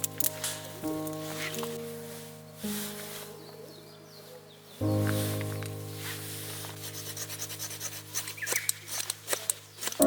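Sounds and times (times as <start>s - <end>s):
faint hiss: 0.0s - 10.0s
music with sustained notes: 0.0s - 10.0s.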